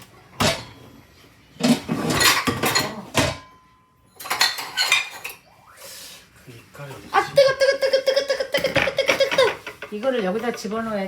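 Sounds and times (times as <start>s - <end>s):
metal utensils and dishes clattering: 0.4s - 0.8s, 1.6s - 5.4s, 8.5s - 11.0s.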